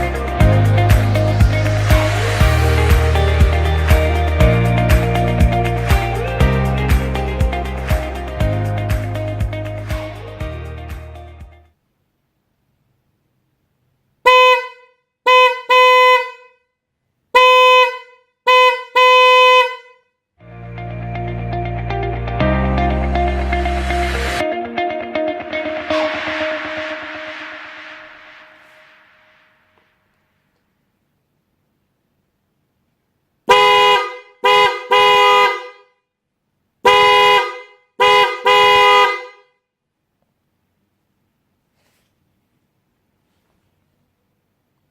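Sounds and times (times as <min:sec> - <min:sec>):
car horn honking: 0:14.2 - 0:16.6, 0:17.3 - 0:20.0, 0:33.5 - 0:35.9, 0:36.8 - 0:39.5.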